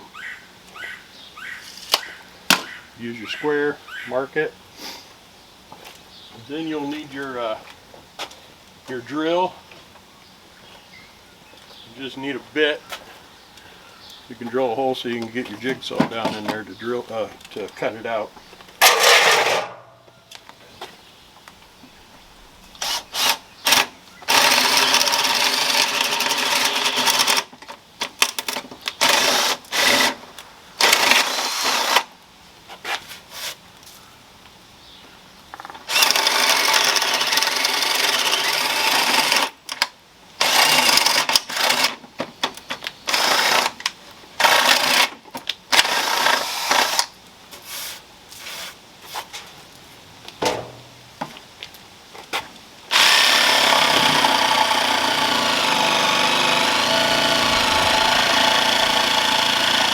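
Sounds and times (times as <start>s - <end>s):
power drill boring into wood: 22.8s - 27.5s, 29.0s - 30.2s, 30.8s - 32.1s, 35.9s - 39.6s, 40.4s - 41.9s, 43.1s - 43.8s, 44.4s - 45.1s, 45.7s - 47.1s, 52.9s - 59.9s.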